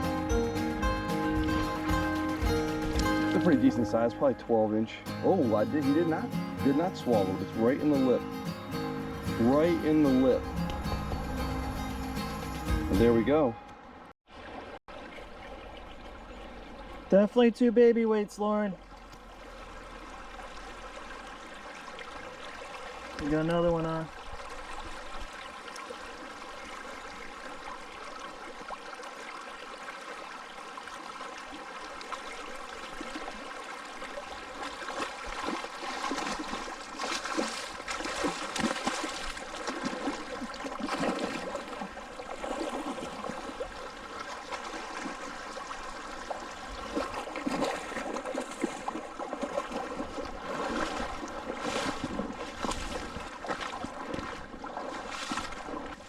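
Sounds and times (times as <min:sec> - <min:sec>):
sharp water splashes: 0:00.0 - 0:04.6, 0:31.3 - 0:56.0
fast-flowing river water: 0:00.0 - 0:13.3, 0:18.8 - 0:56.0.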